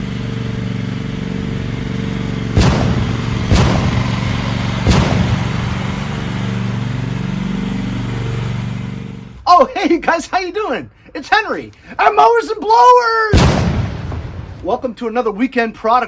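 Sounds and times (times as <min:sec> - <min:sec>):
engine running: 0:00.0 - 0:09.4
sharp bangs: 0:02.3 - 0:07.4, 0:13.3 - 0:14.9.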